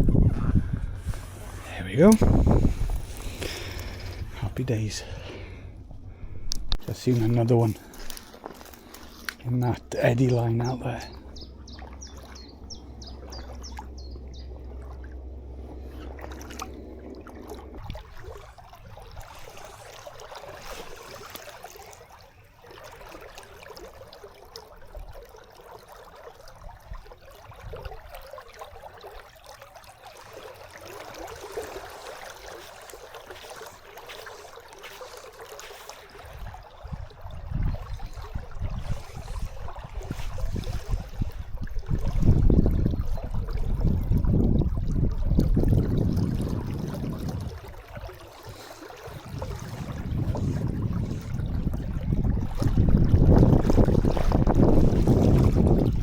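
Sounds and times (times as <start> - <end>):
low rumble: 0.0 - 6.9, 7.8 - 19.3, 49.2 - 53.7
river water flowing: 0.0 - 45.0, 45.9 - 56.0.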